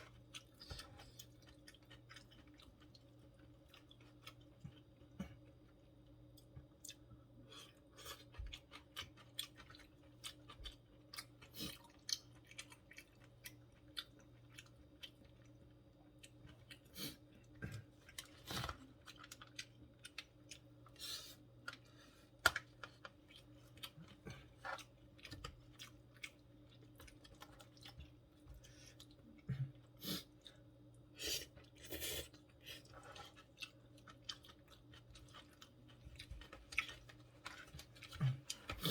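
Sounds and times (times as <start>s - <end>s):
faint steady hum: 0.0s - 38.9s
person chewing food: 0.0s - 38.9s.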